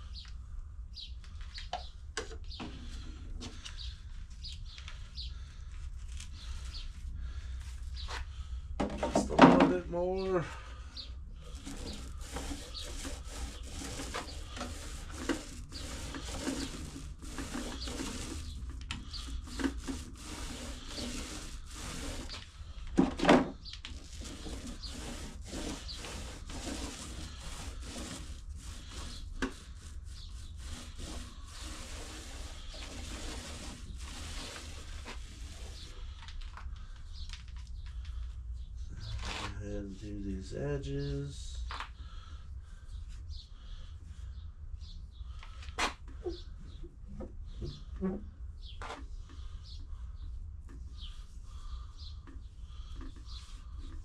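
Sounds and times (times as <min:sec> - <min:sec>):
foam roller rubbing on wood: 0:11.4 - 0:22.5, 0:23.9 - 0:36.1, 0:53.0 - 0:54.0.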